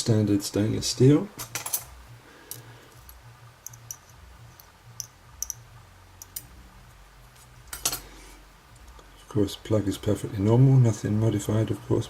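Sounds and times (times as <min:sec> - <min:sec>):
metallic clicks of lock parts: 0:01.4 - 0:05.6, 0:06.2 - 0:06.5.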